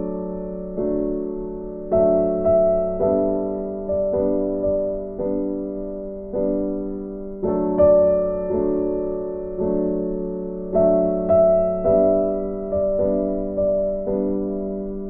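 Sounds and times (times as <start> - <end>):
gentle piano chords: 0.0 - 15.0.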